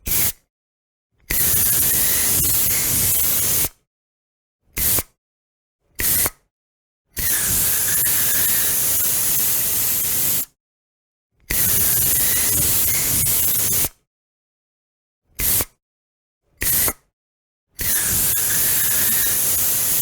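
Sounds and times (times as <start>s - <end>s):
aerosol spray can hissing: 18.1s - 20.0s.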